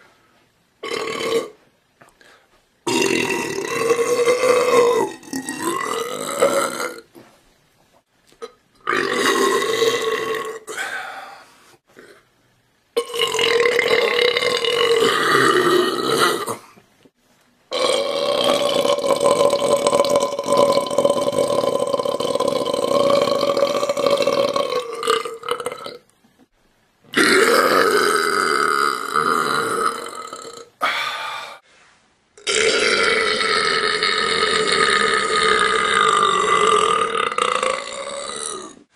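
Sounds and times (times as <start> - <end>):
long drawn-out burps: 0.8 - 1.6, 2.9 - 7.1, 8.4 - 11.1, 13.0 - 16.8, 17.7 - 26.1, 27.1 - 31.6, 32.4 - 38.9.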